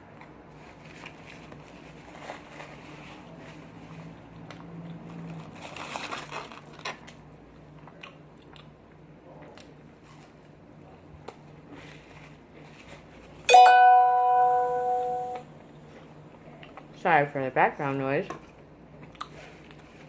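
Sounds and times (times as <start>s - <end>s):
chewing with smacking and crunching: 0.7s - 13.3s, 15.9s - 16.9s, 18.9s - 20.0s
phone alert tone: 13.5s - 15.4s.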